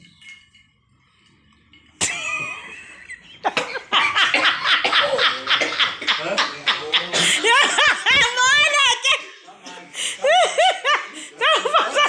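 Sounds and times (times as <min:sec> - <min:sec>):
person laughing heartily: 0:02.0 - 0:08.9.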